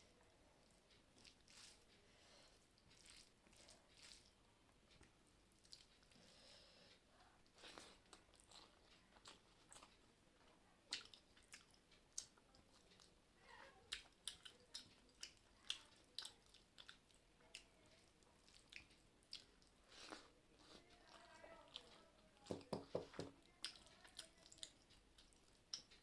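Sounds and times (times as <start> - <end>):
person chewing food: 0.6 - 26.0.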